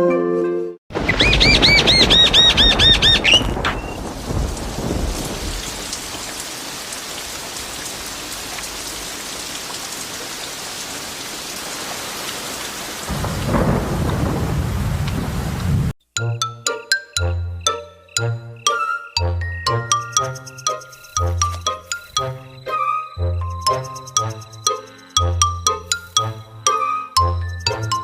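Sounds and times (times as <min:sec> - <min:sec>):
thunder rumbling: 0:00.9 - 0:08.9, 0:13.0 - 0:15.9
high arching chirps: 0:01.0 - 0:04.1, 0:17.6 - 0:27.9
steady rain: 0:01.0 - 0:15.9.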